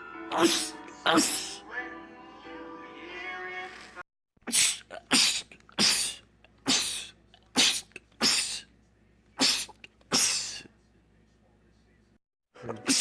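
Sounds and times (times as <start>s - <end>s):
man sneezing: 0.3s - 1.6s, 4.4s - 8.7s, 9.4s - 10.7s.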